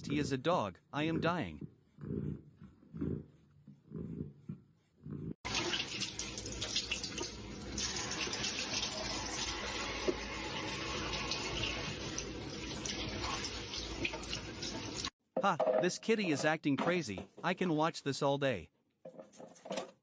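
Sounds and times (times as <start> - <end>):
tap water running into sink: 5.5 - 15.1.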